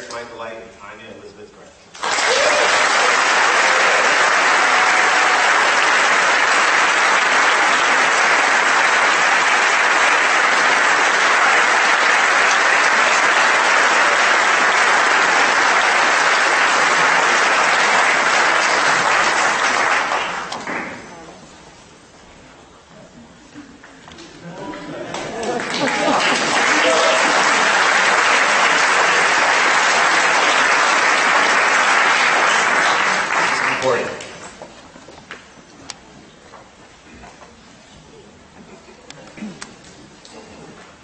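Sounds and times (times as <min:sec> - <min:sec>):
audience applauding: 0:01.9 - 0:21.1, 0:24.4 - 0:34.6.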